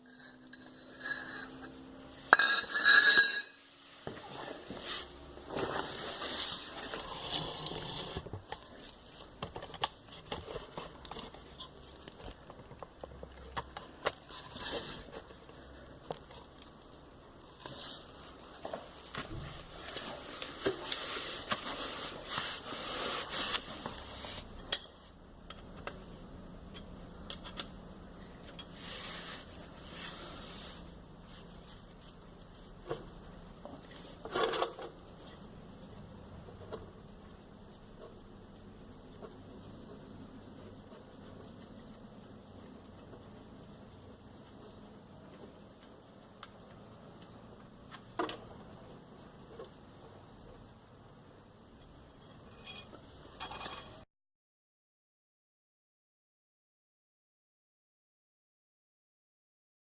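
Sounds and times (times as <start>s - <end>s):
rasping and scraping: 0.0s - 3.6s, 4.2s - 9.3s.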